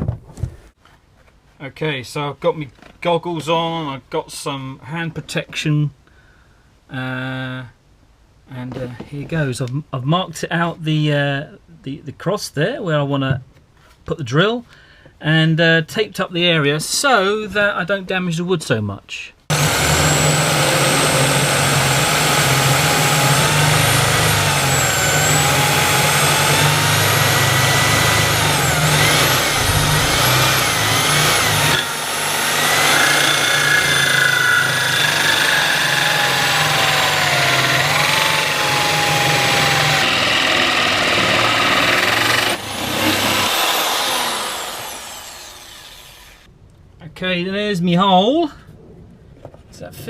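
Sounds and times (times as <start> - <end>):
power drill cutting wood: 19.5 - 46.5.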